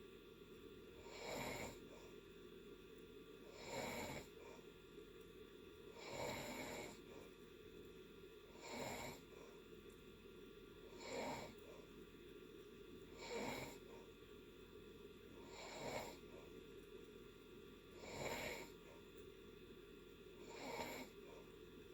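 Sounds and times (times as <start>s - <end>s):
person snoring: 1.0s - 1.9s, 3.5s - 4.4s, 6.0s - 7.1s, 8.5s - 9.3s, 10.9s - 11.6s, 13.2s - 13.9s, 15.4s - 16.3s, 18.0s - 18.8s, 20.4s - 21.2s.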